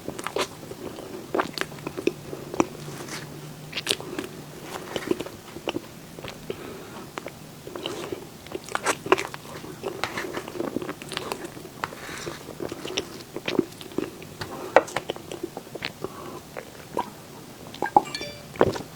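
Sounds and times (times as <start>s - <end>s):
person chewing wetly: 5.0s - 16.8s.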